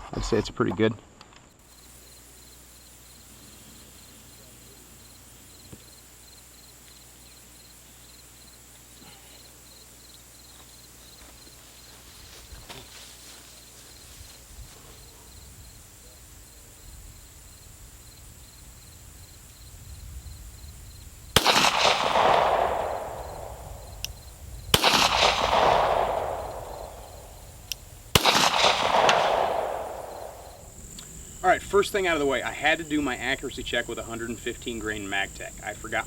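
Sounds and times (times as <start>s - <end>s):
crickets chirping: 0.2s - 36.0s
pistol shots: 21.4s - 24.1s, 24.7s - 30.7s.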